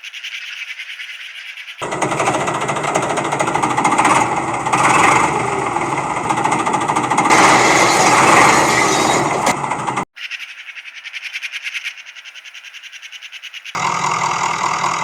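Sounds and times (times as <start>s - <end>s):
small machine rattling: 1.8s - 10.1s.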